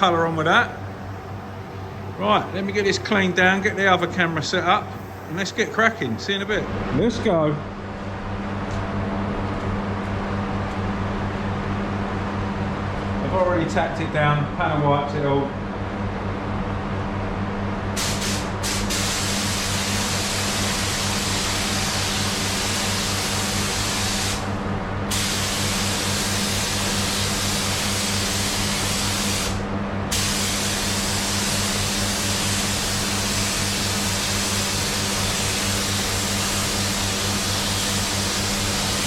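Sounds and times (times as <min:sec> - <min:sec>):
steady low hum: 0:00.0 - 0:39.0
paint spray gun hissing: 0:18.0 - 0:24.4, 0:25.1 - 0:39.0.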